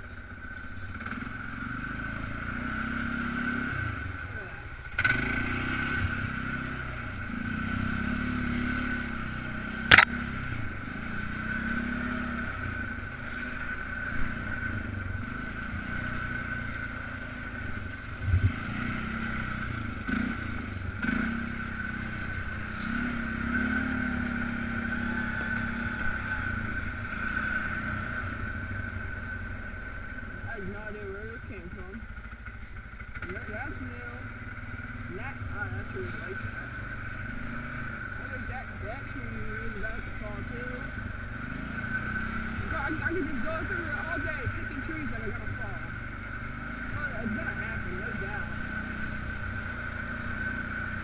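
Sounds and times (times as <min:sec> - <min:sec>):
atv engine running: 0:00.0 - 0:51.0.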